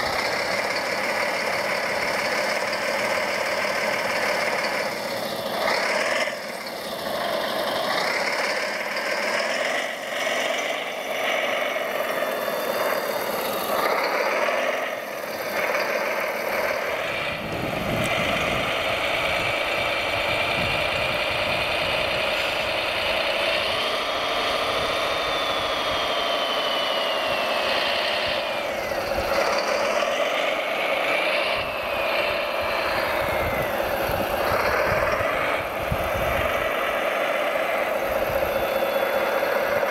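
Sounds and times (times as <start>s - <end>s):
engine-like drone and rattle: 0.0s - 39.9s
motor whines: 0.0s - 39.9s.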